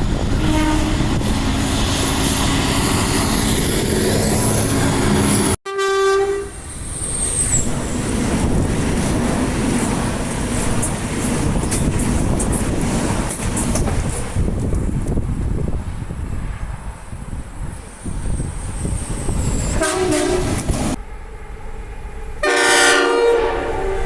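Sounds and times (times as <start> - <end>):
train rumbling: 0.0 - 24.0
train horn: 0.2 - 1.2, 5.6 - 6.6, 19.7 - 20.7, 22.3 - 24.0
train wheel clicks: 8.5 - 15.2.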